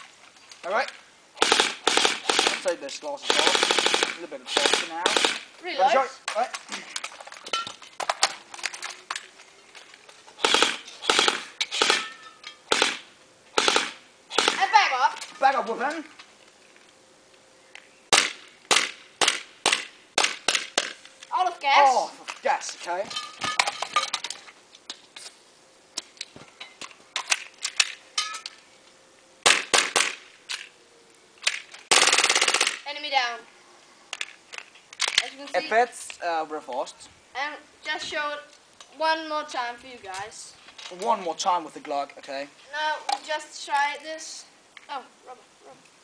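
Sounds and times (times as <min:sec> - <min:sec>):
airsoft rifle firing bursts: 0:01.4 - 0:05.5, 0:10.4 - 0:12.0, 0:12.7 - 0:13.0, 0:13.6 - 0:14.7, 0:31.9 - 0:32.8.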